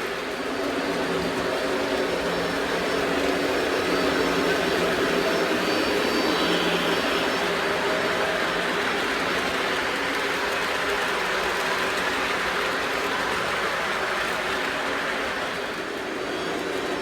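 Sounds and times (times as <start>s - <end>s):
model train motor hum: 0.0s - 17.0s
wheels rolling on track: 0.0s - 17.0s.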